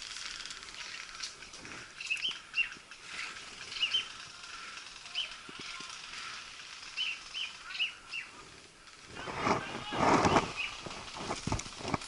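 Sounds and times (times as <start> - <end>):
steady outdoor hiss: 0.0 - 12.0
birds chirping: 0.6 - 8.6, 9.6 - 11.1.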